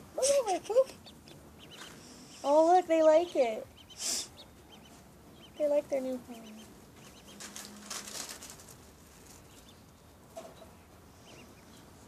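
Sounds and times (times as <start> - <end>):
ducklings peeping: 0.0 - 12.0
rustling scratch: 7.0 - 9.7.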